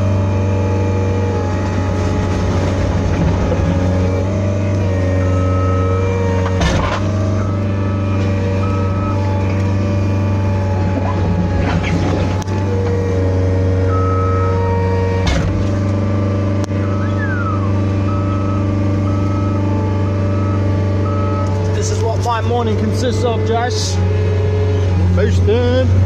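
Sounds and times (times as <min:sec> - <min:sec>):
diesel engine running: 0:00.0 - 0:26.0
reversing alarm beeping: 0:04.8 - 0:11.2, 0:13.0 - 0:15.2, 0:16.6 - 0:21.6.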